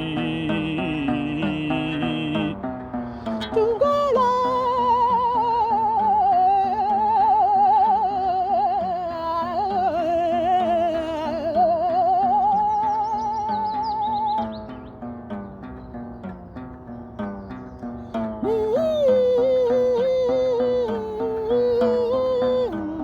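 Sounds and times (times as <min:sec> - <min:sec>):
voice singing long vibrato note: 0:18.4 - 0:23.0.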